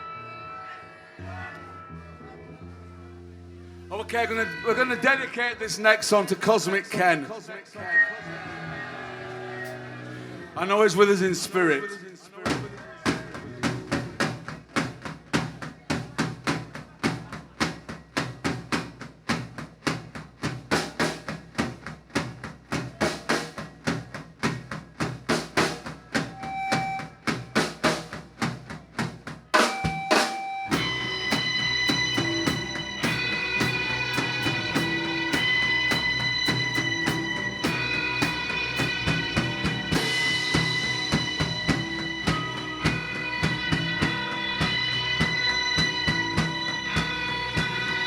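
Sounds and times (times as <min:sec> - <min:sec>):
guitar and keyboard chords: 0:00.0 - 0:05.9, 0:29.6 - 0:48.0
drum kit beat: 0:12.5 - 0:48.0.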